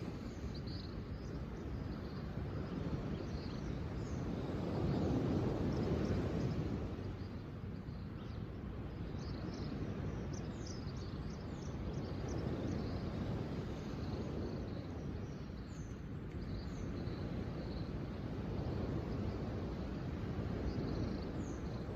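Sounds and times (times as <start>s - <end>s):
small birds chirping: 9.1s - 12.9s.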